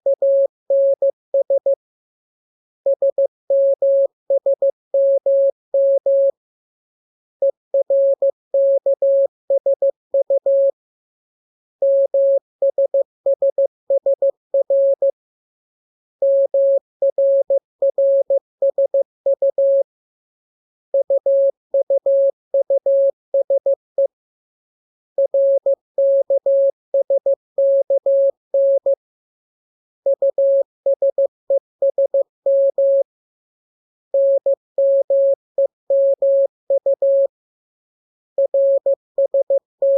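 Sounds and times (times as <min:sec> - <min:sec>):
morse code beeps: 0:00.2 - 0:01.8, 0:25.3 - 0:29.0, 0:30.1 - 0:31.3, 0:31.9 - 0:33.0, 0:34.2 - 0:37.3, 0:38.4 - 0:39.9.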